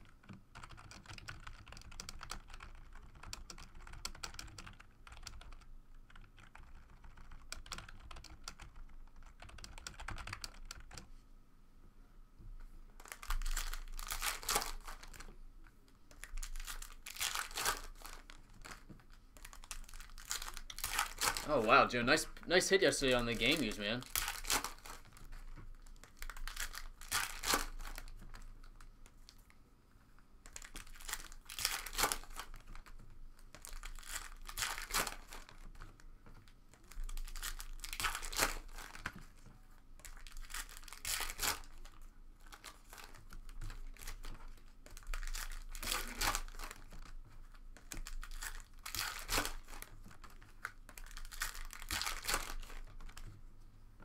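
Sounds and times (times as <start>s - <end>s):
card pack wrappers crinkling: 13.0s - 15.3s, 16.2s - 18.8s, 19.4s - 25.2s, 25.8s - 28.4s, 30.5s - 32.9s, 33.6s - 35.8s, 36.7s - 39.1s, 40.0s - 47.1s, 47.8s - 53.3s.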